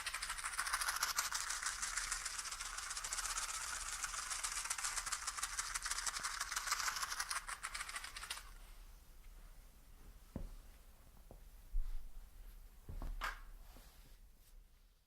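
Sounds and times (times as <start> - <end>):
fast shaking rattle: 0.0 - 8.6.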